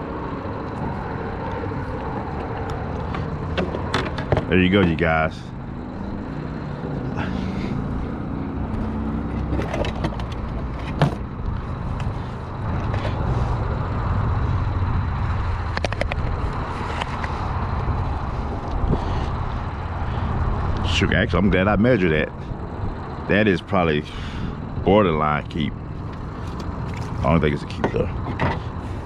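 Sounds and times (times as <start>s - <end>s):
boat motor humming: 0.0s - 29.0s
gear clicking and knocking: 8.7s - 13.3s.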